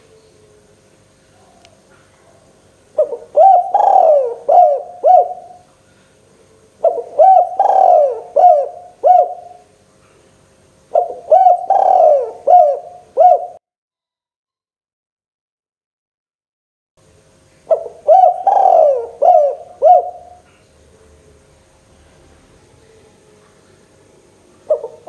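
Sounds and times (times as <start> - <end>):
dove cooing: 1.4 - 5.7, 6.5 - 9.7, 10.9 - 13.6, 17.7 - 20.6, 24.6 - 25.0.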